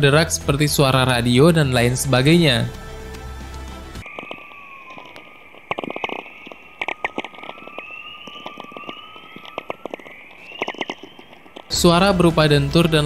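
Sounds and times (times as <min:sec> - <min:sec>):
static-like crackling: 0:02.7 - 0:13.0
sharp clicks: 0:04.0 - 0:11.7
thin rising whistling tone: 0:04.0 - 0:11.7.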